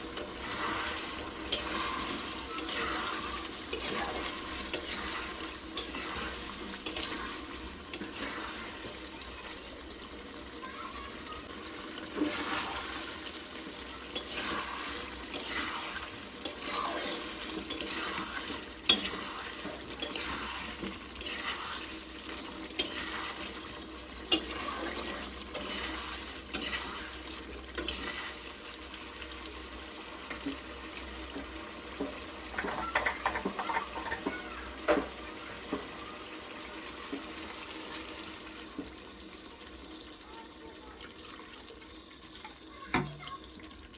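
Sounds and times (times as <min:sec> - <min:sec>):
spoon scraping a pan: 0:00.0 - 0:09.0, 0:12.1 - 0:13.3, 0:13.9 - 0:28.5, 0:32.0 - 0:35.9
food sizzling in a pan: 0:00.0 - 0:43.9
spoon clinking against pan: 0:04.6 - 0:07.2, 0:18.8 - 0:19.3, 0:20.0 - 0:20.4.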